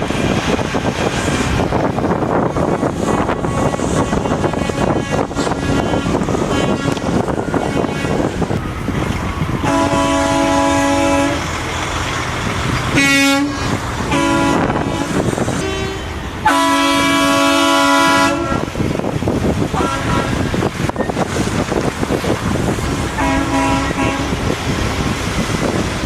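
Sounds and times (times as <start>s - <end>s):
vehicle noise: 0.0s - 26.0s
truck air horns: 3.0s - 8.3s, 9.6s - 11.6s, 12.9s - 18.8s, 19.7s - 20.6s, 23.2s - 24.6s.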